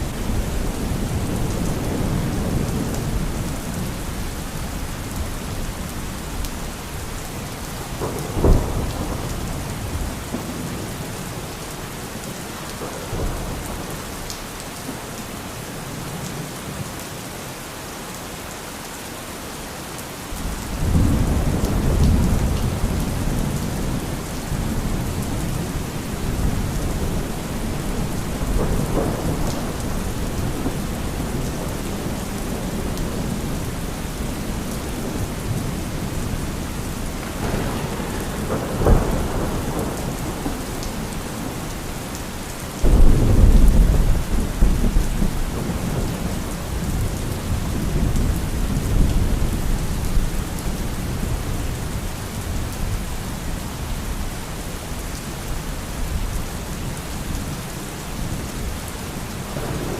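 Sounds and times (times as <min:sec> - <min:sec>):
rolling thunder rumble: 0:07.7 - 0:11.1, 0:20.4 - 0:42.2, 0:42.8 - 0:53.0
sharp thunderclap: 0:37.2 - 0:40.8, 0:42.8 - 0:46.2.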